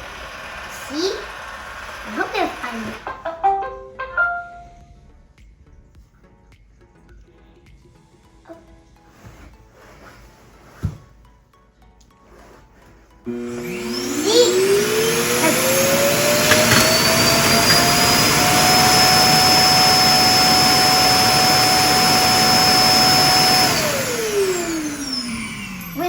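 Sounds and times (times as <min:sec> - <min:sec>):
suction motor whining: 0:00.0 - 0:03.1, 0:13.3 - 0:26.0.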